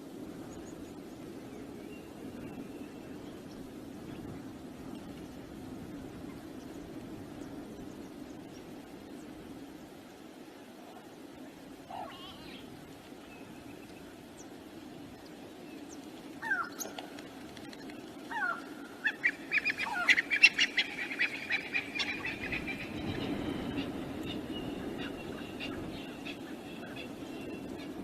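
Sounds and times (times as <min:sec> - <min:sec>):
birds whistled calls: 0:18.3 - 0:28.0.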